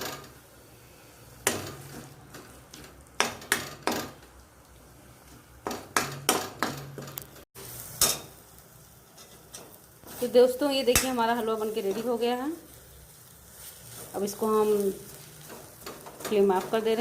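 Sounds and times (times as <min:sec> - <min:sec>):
spoon scraping a cooking pan: 0:09.0 - 0:12.2.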